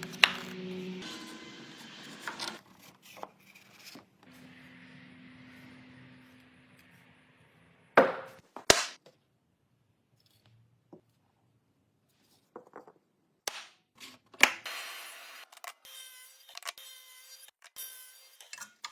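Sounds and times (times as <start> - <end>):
sharp wooden knocks: 8.0 - 8.4.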